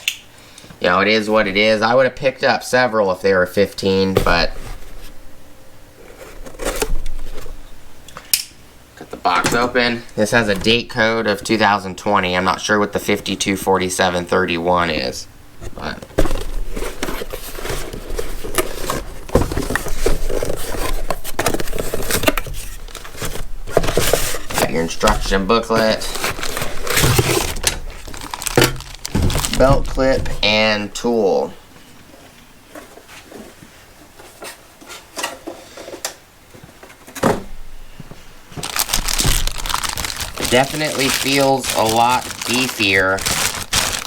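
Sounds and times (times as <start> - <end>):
packaging rustling and crinkling: 3.9 - 5.2, 6.0 - 7.6, 9.3 - 11.8, 15.0 - 31.3, 38.0 - 44.0
scraping: 15.6 - 30.6, 38.5 - 44.0.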